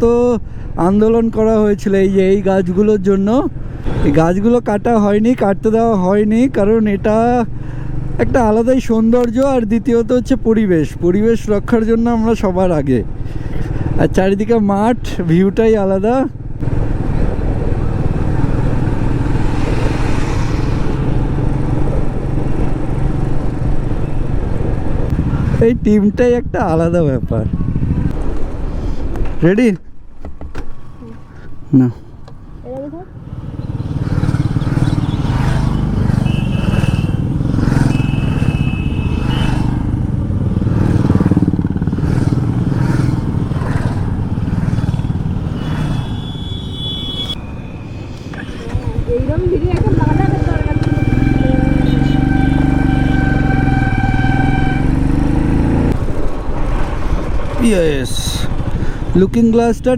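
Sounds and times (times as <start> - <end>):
motorcycle engine rumble: 15.4 - 59.6
motorcycle engine running: 32.8 - 45.6, 48.3 - 57.3.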